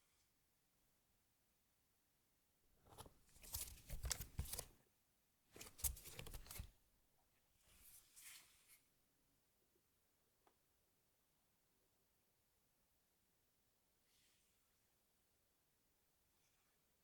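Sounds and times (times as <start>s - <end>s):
hand handling rustling: 2.9s - 4.7s, 5.6s - 6.7s.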